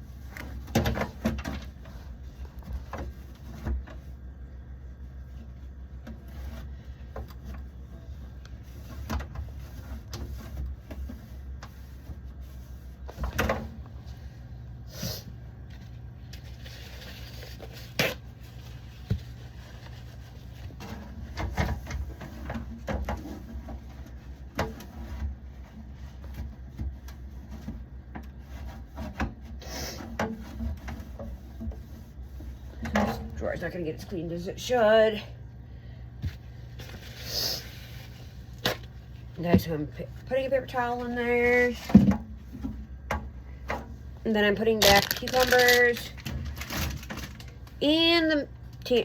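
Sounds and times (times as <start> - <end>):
steady low hum: 0.0 - 49.0
wiping plastic drawer: 18.1 - 34.1.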